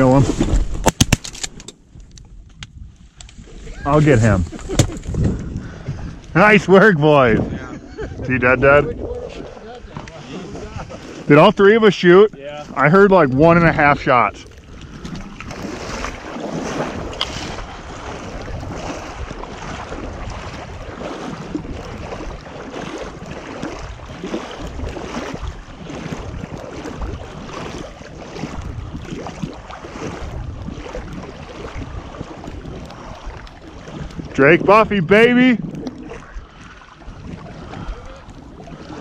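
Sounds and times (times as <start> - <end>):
wind rushing over microphone: 1.8 - 39.0
water splashing: 2.8 - 39.0
knocks around small boat: 4.0 - 6.2, 8.4 - 11.4, 12.2 - 34.8.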